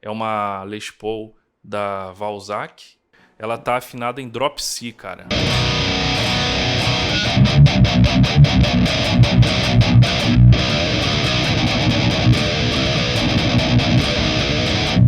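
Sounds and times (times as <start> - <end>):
distorted electric guitar riff: 5.3 - 15.0.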